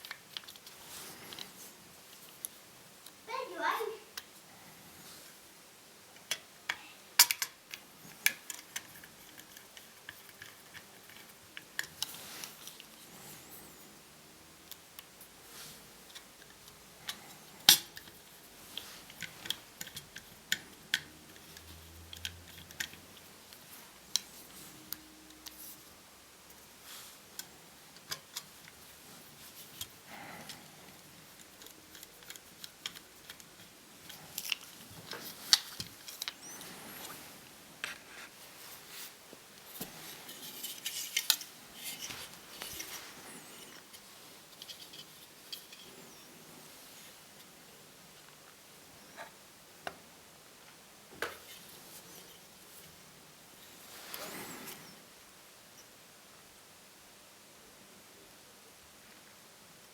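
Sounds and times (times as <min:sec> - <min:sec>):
scraping and rustling: 0:28.4 - 0:47.5.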